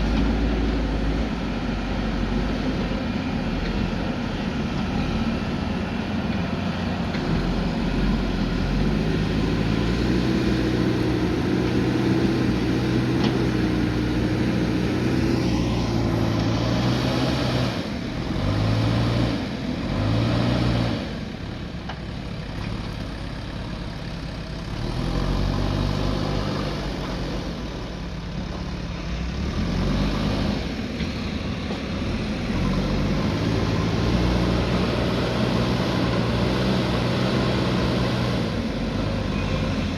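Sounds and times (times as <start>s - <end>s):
diesel engine working under load: 0.0s - 39.9s.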